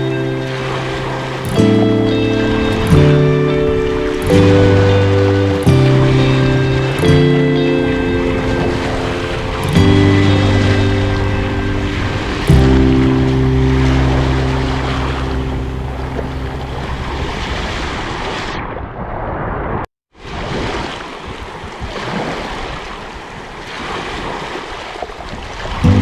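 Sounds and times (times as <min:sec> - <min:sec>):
background music: 0:00.0 - 0:17.0
sea waves washing: 0:00.0 - 0:18.7, 0:20.2 - 0:26.0
wind: 0:00.0 - 0:26.0.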